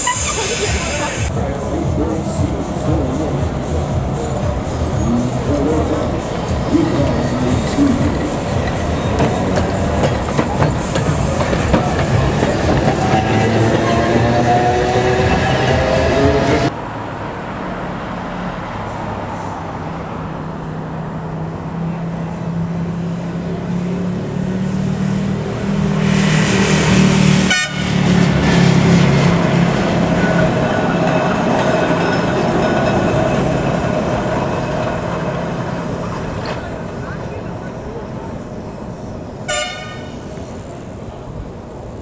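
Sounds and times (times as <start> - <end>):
high hiss or squeal: 0.0 - 1.3
tram motor hum: 0.0 - 16.8, 18.6 - 42.0.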